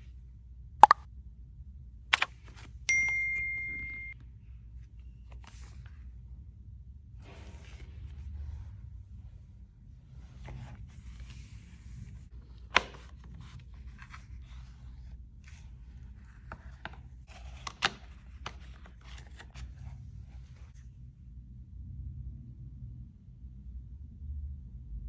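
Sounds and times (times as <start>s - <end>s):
sharp clicks and taps: 0.8s - 1.0s.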